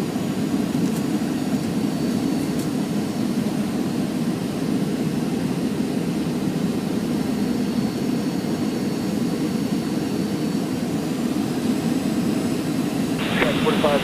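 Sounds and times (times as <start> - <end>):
jet engine rumble: 10.4 - 14.0
faint high whine: 13.2 - 14.0.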